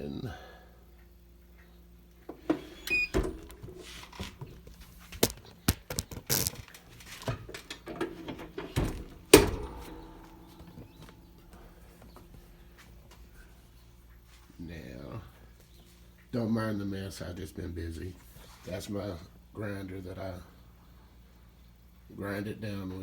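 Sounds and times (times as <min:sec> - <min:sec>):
knocks and clicks of handling: 0:02.2 - 0:13.2
heavy thud: 0:08.4 - 0:11.8.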